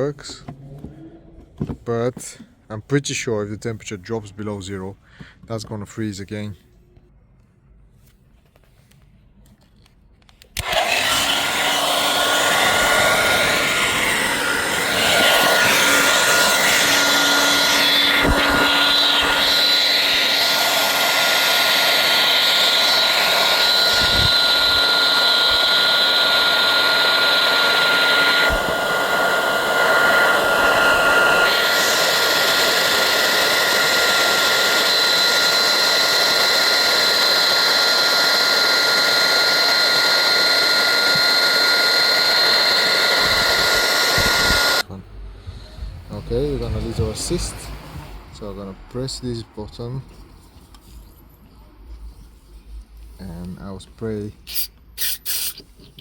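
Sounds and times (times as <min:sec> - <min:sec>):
hair dryer blowing: 0:10.6 - 0:44.9.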